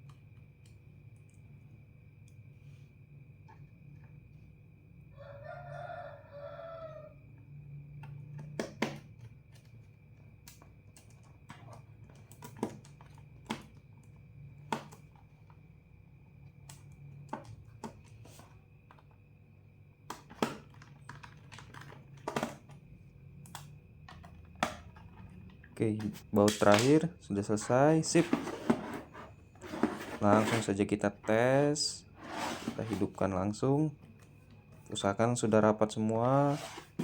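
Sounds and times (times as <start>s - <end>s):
rooster crowing: 5.1s - 7.3s.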